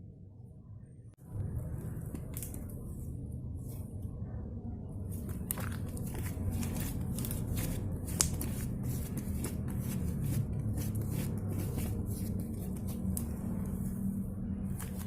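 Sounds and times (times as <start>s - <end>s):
steady low hum: 0.0s - 15.0s
hands mixing slime clicking: 7.3s - 8.6s.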